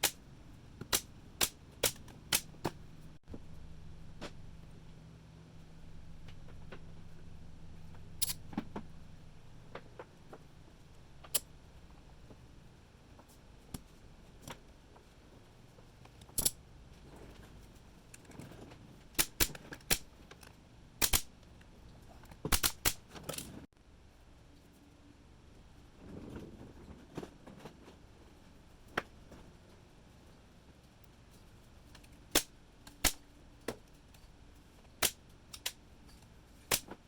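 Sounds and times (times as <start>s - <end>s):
nail gun shots into wood: 21.0s - 21.3s, 22.5s - 23.0s.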